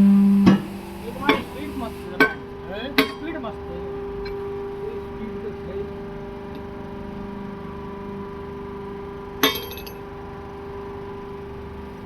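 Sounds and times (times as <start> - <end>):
steady machine hum: 0.0 - 12.0
sharp metallic clink: 9.4 - 10.0.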